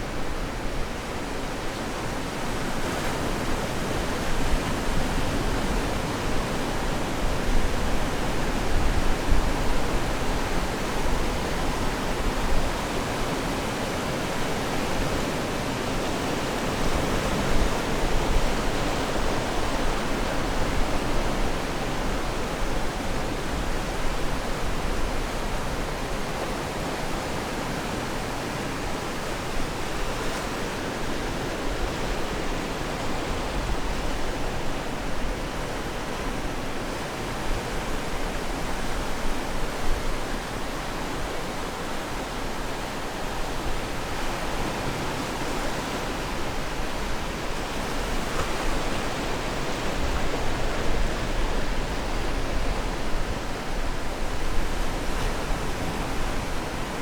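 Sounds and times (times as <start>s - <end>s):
ocean waves washing ashore: 0.0s - 57.0s.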